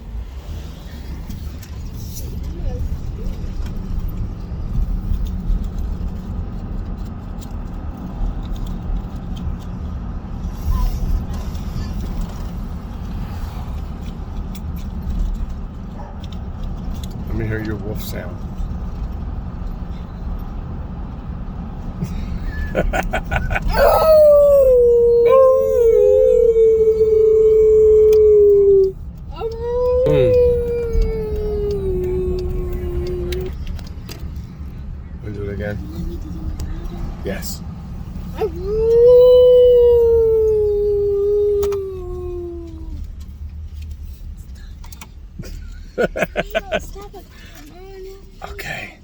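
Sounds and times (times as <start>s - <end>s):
car road and engine rumble: 0.0s - 49.0s
second howling voice: 22.8s - 33.6s, 38.4s - 43.1s
person howling like a wolf: 23.5s - 33.6s, 38.4s - 43.0s.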